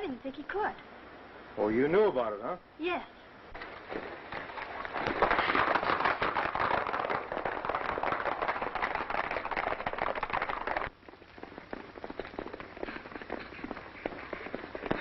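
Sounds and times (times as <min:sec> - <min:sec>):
horses galloping hoofbeats: 0:03.5 - 0:15.0.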